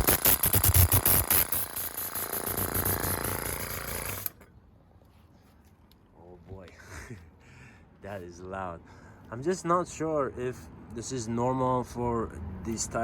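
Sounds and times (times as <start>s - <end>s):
paint sprayer pulsing: 0.0s - 4.4s.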